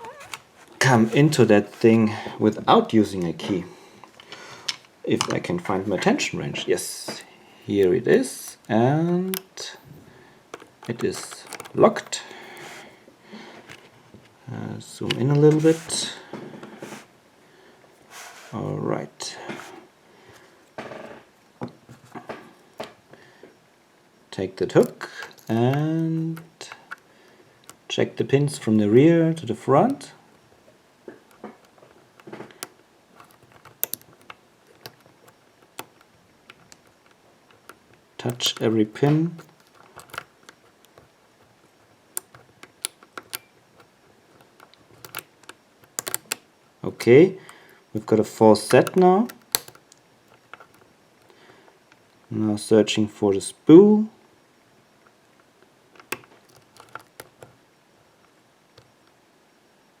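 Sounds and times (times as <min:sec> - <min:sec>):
faint metallic lock picking clicks: 0:32.5 - 0:38.7, 0:44.6 - 0:46.4, 0:48.7 - 0:50.8, 0:56.0 - 0:57.5
lock pick clicking in padlock: 0:33.3 - 0:34.1, 0:42.2 - 0:43.5, 0:44.6 - 0:46.4, 0:48.6 - 0:50.8, 0:56.0 - 0:57.5.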